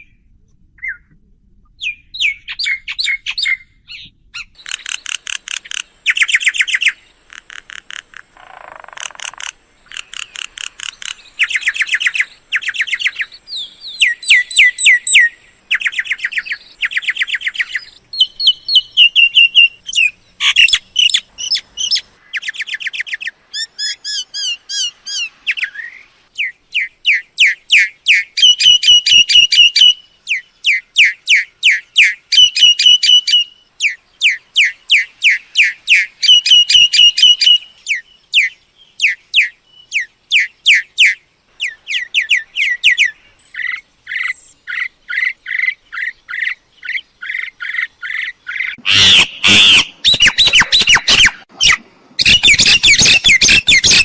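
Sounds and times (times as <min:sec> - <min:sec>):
myna calls: 0:47.2 - 0:54.0.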